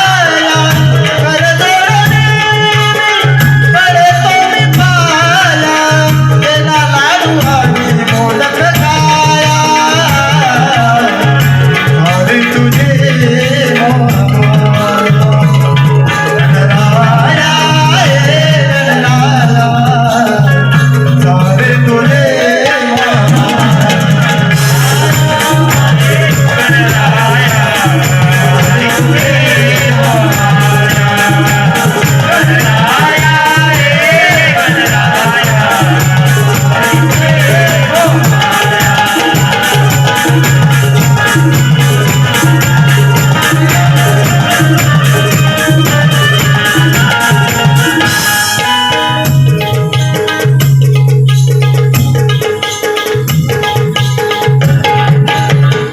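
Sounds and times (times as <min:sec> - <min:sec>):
hand drums beating: 0:00.0 - 0:55.9
wavering melody line: 0:08.9 - 0:55.9.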